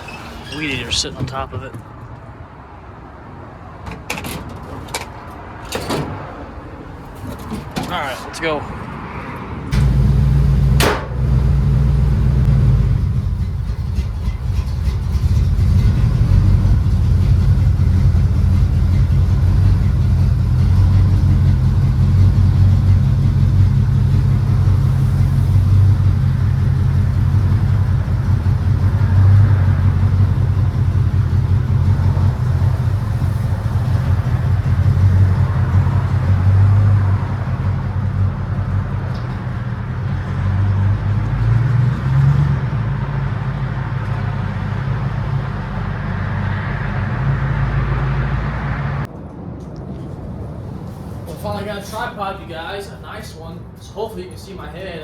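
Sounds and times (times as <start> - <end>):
vehicle engine and road rumble: 0.0 - 55.0
sharp thump: 10.7 - 11.4.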